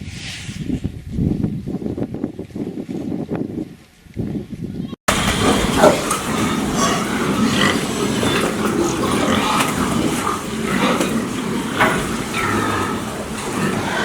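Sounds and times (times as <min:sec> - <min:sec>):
pigs grunting: 0:05.1 - 0:14.0.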